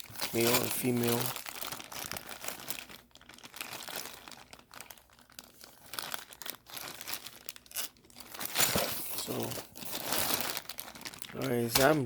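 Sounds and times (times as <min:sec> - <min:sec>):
plastic bags crinkling: 0:00.0 - 0:12.0.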